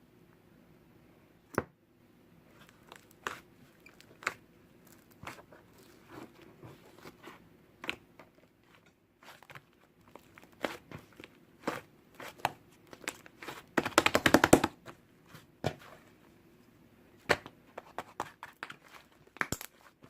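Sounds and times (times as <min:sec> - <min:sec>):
slime popping and crackling: 0:02.6 - 0:05.9.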